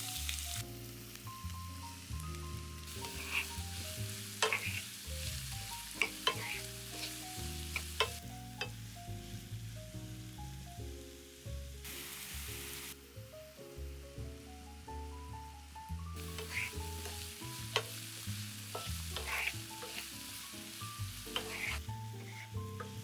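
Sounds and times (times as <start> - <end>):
food sizzling in a frying pan: 0.0 - 13.9, 16.2 - 23.0
soft background music: 0.0 - 23.0
utensil clicking against pan: 6.0 - 6.6, 7.7 - 8.7, 21.3 - 21.7.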